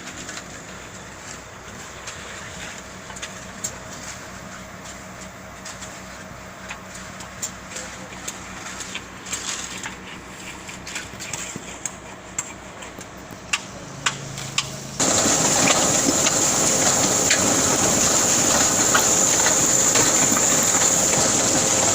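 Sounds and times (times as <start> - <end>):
low engine rumble: 0.0 - 21.9
mechanical rush with high hiss: 13.4 - 21.9.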